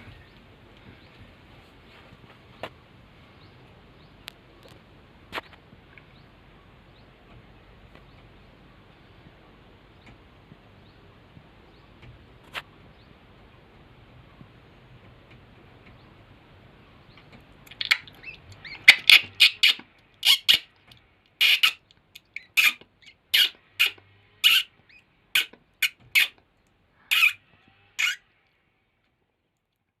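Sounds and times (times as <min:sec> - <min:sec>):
baby bird chirping: 0:17.7 - 0:20.7, 0:21.4 - 0:26.4, 0:27.1 - 0:27.4, 0:28.0 - 0:28.2.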